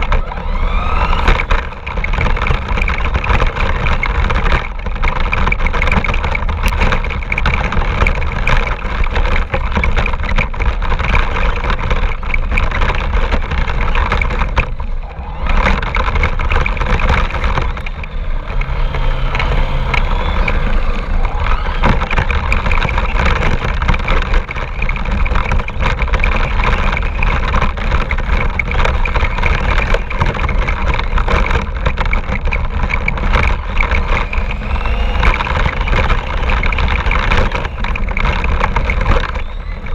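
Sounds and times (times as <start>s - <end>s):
radio-controlled car motor: 0.0s - 39.9s.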